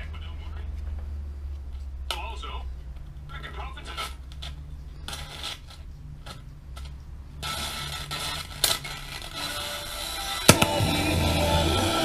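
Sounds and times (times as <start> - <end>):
steady hum: 0.0 - 12.0
radio static hiss: 2.1 - 6.3, 7.2 - 12.0
sharp crackle: 3.8 - 11.3.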